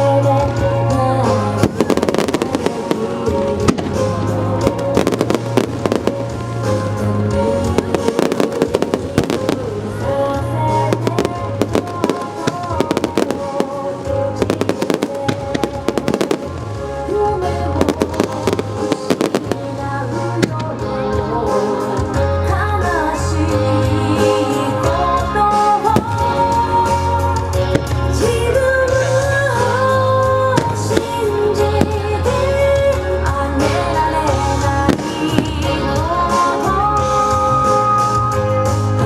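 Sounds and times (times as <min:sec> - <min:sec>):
fireworks bangs and crackles: 0:00.0 - 0:22.1, 0:25.5 - 0:38.3
loud show music with bass: 0:00.0 - 0:39.0.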